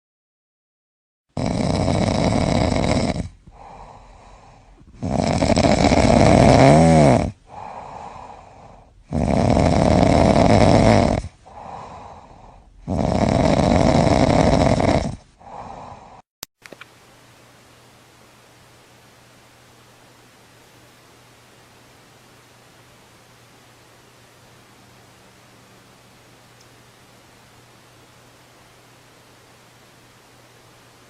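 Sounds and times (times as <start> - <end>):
calf snoring: 1.4 - 15.9
quiet breath: 3.3 - 5.0, 7.3 - 9.1, 11.2 - 12.9, 15.1 - 16.2.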